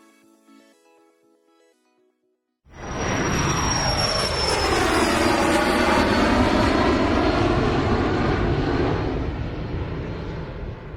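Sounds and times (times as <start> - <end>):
aircraft engine rush: 2.7 - 10.9
high whistling whine: 2.7 - 10.9.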